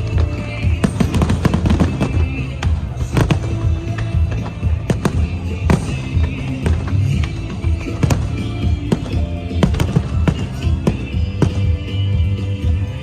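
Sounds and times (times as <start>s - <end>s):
fireworks bangs and crackles: 0.0s - 13.0s
music with heavy bass: 0.0s - 13.0s.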